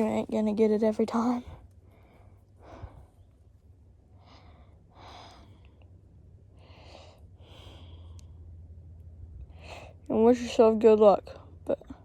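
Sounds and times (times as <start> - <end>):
low steady hum: 0.0 - 12.0
person breathing: 1.5 - 3.4, 4.1 - 8.6, 9.4 - 10.1.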